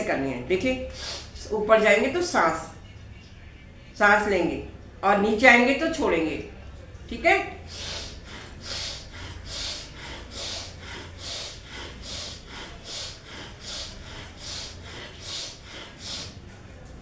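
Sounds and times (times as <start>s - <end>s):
woman breathing forcefully through nose: 0.8s - 1.5s, 7.6s - 16.6s.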